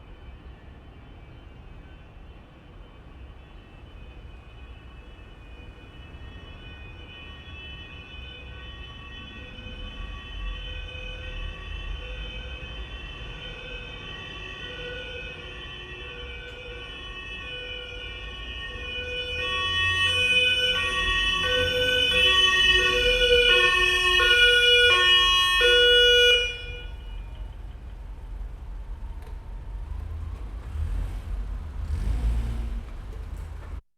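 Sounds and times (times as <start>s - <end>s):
ambulance siren two-tone: 0.0s - 31.1s
low vehicle rumble: 26.9s - 33.8s.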